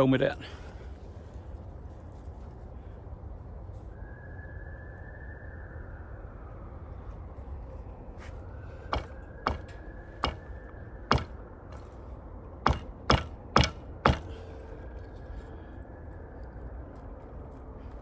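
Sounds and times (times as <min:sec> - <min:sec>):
sharp wooden knocks: 0:08.9 - 0:10.5, 0:11.1 - 0:11.9, 0:12.6 - 0:14.4.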